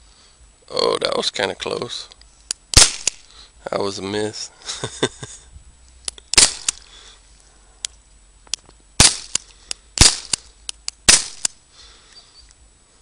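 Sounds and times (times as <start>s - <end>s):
revolver shots like cap gun: 2.8s - 3.2s, 9.0s - 9.4s, 10.0s - 10.5s, 11.1s - 11.6s.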